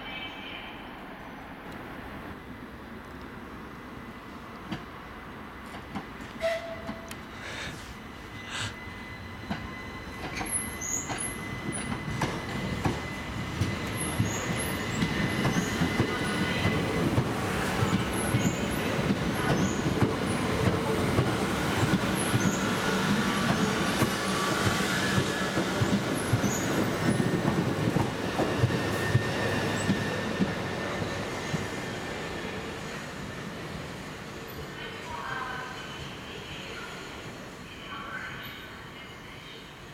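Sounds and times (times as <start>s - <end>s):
electric train braking squeal: 7.7s - 16.2s.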